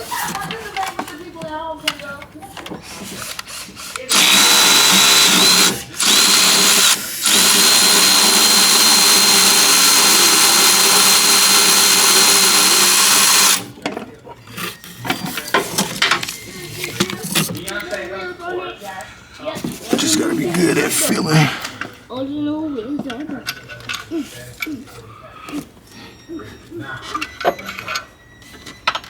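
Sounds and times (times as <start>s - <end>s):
power drill whining: 3.4s - 13.7s.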